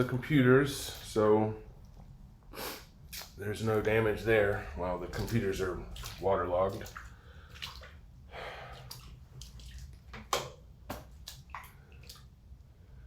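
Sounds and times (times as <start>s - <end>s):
low steady hum: 0.0s - 13.0s
footsteps splashing in water: 3.2s - 12.4s.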